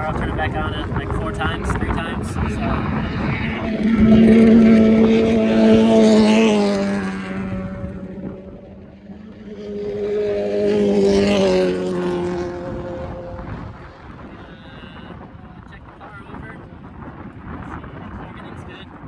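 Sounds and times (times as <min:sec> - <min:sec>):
utility vehicle engine revving: 0:00.9 - 0:14.0.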